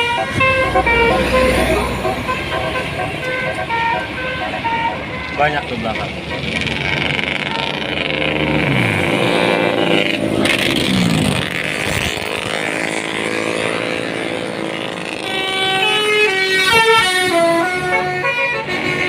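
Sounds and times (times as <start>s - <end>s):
tones sliding down in pitch: 0.0s - 5.4s
multi-tone bus horn tune: 0.0s - 10.6s, 12.2s - 19.0s
bus engine running: 0.0s - 19.0s.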